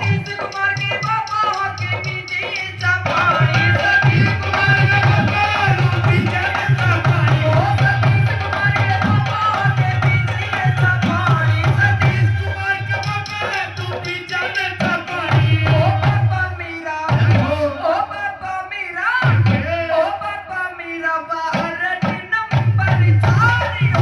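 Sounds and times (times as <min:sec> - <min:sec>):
heavy drum beat: 0:00.0 - 0:16.5.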